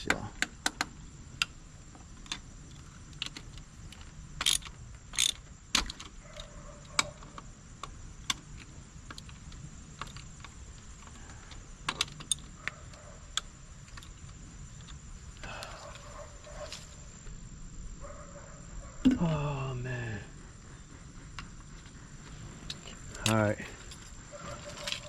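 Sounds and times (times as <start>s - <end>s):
metallic clicks of hand tools: 4.4s - 7.2s.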